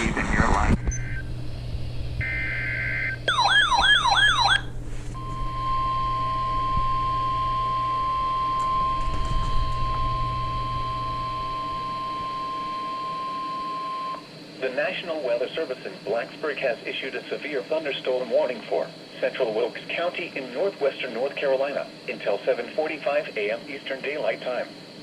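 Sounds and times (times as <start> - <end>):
low radio hum: 0.0 - 25.0
warbling siren-like sweep: 2.3 - 4.6.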